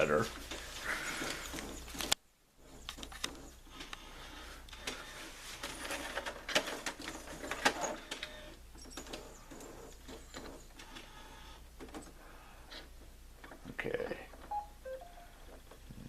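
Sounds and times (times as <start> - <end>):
printer mechanism clicking and whirring: 2.8 - 12.2.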